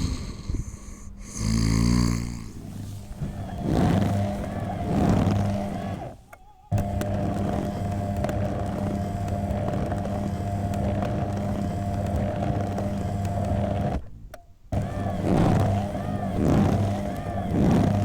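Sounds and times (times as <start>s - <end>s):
loud snore: 0.0s - 6.0s
massage machine motor humming: 0.0s - 18.0s.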